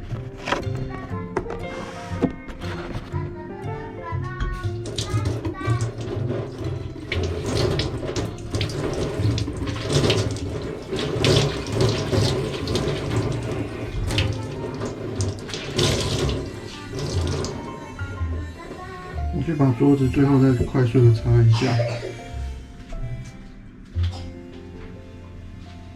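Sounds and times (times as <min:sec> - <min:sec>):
cloth being rinsed and splashing: 0:04.7 - 0:18.4
tap running into a sink: 0:04.8 - 0:17.8.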